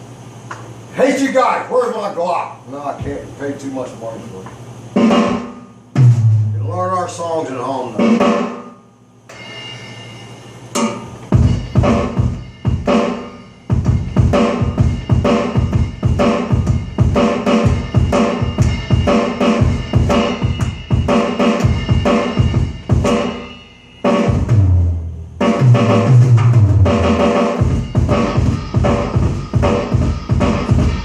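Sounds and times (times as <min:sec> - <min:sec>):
electronic drum kit groove: 0:02.9 - 0:03.3, 0:04.9 - 0:09.9, 0:10.7 - 0:31.0.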